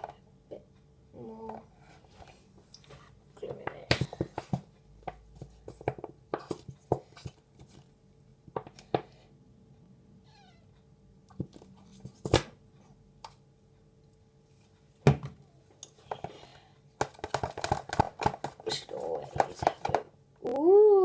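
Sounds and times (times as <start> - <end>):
cat meow: 10.2 - 10.7.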